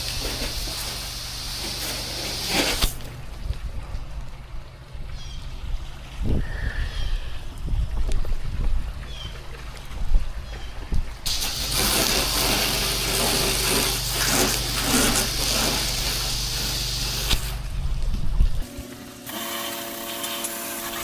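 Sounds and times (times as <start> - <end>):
pressure washer engine running: 0.0 - 3.0, 11.3 - 17.7, 18.6 - 21.0
high-pressure water spray hissing: 0.0 - 3.1, 11.2 - 17.7, 18.6 - 21.0.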